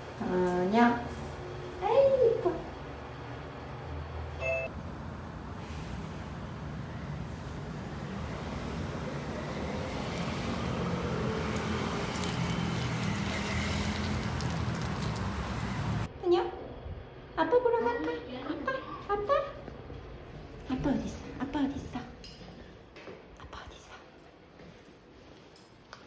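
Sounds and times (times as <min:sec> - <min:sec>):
low engine hum: 0:02.7 - 0:16.1
car driving on road: 0:04.7 - 0:16.1.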